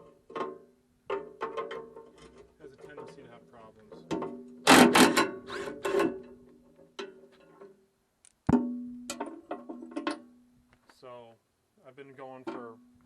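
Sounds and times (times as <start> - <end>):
metal parts clanking: 4.0 - 6.4
hard metal bang: 4.6 - 5.4.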